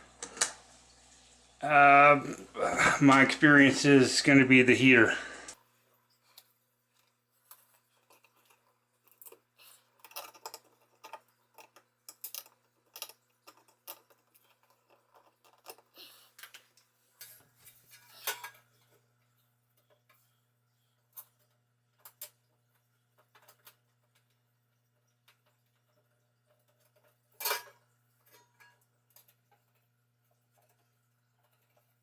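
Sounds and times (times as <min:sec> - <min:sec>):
tools and parts clicking: 0:07.5 - 0:18.7, 0:25.3 - 0:29.8.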